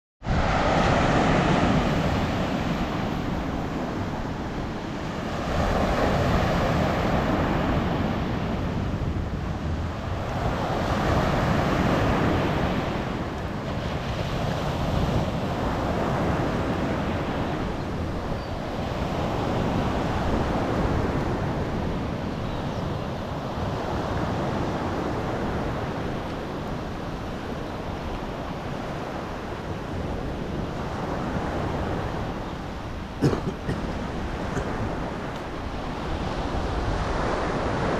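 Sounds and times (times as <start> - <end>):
waves washing on shore: 0.2 - 37.9
wind on microphone: 0.2 - 37.9.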